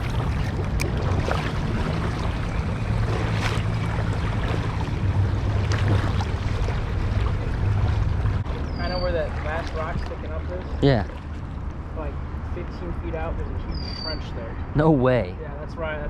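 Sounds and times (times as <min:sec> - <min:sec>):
wind on microphone: 0:00.0 - 0:10.2
legs wading through water: 0:00.0 - 0:12.5.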